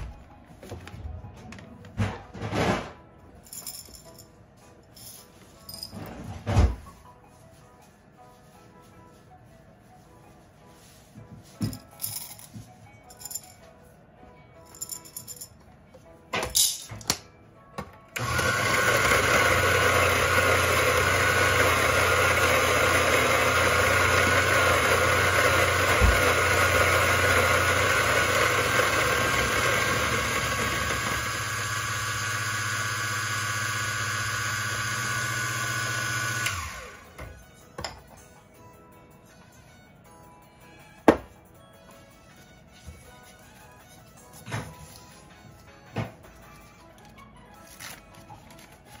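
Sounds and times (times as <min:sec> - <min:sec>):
light clinks and rattles: 0:03.4 - 0:04.3, 0:13.1 - 0:13.6
electric coffee grinder grinding: 0:18.2 - 0:37.2.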